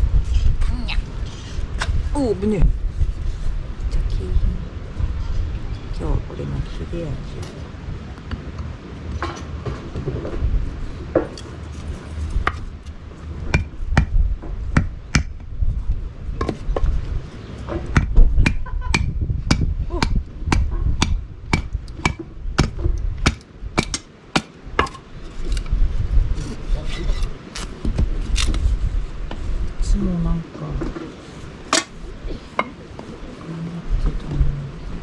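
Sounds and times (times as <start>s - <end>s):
blade chopping firewood: 12.3s - 12.9s, 13.5s - 15.6s, 17.7s - 25.7s, 31.7s - 32.8s.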